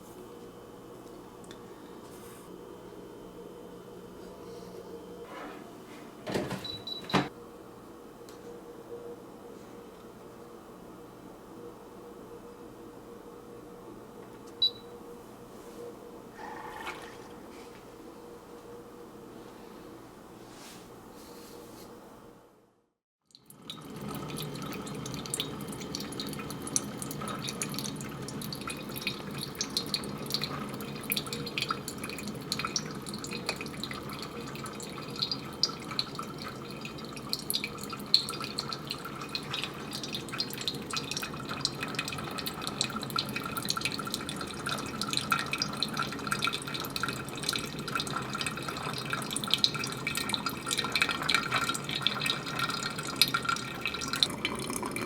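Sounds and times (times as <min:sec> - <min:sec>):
coffee maker hissing: 0:16.3 - 0:17.7, 0:24.1 - 0:55.0
crackling pops and drips: 0:23.3 - 0:55.0.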